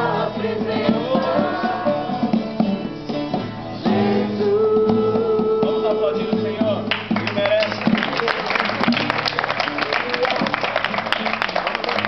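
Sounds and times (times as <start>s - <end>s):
people singing worship song: 0.0s - 2.7s, 3.8s - 5.6s
acoustic guitar strumming: 0.0s - 12.0s.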